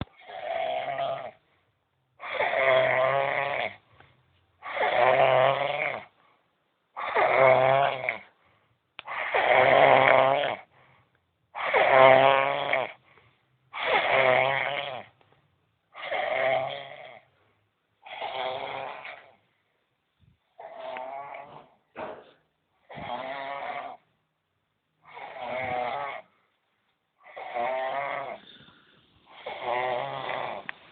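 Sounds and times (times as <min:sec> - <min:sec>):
man snoring: 0:00.2 - 0:01.4, 0:02.2 - 0:03.8, 0:04.6 - 0:06.1, 0:07.0 - 0:08.3, 0:09.1 - 0:10.7, 0:11.6 - 0:13.0, 0:13.8 - 0:15.1, 0:16.0 - 0:17.3, 0:18.0 - 0:19.4, 0:22.9 - 0:24.0, 0:25.0 - 0:26.3, 0:27.2 - 0:30.7.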